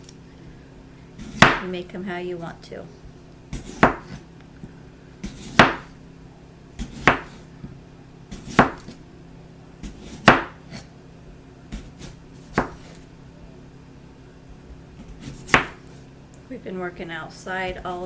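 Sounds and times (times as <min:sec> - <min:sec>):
knife slicing on cutting board: 0:03.5 - 0:04.3, 0:05.2 - 0:06.0, 0:06.8 - 0:07.5, 0:08.3 - 0:09.0, 0:09.8 - 0:10.9, 0:11.7 - 0:13.1, 0:15.0 - 0:16.1.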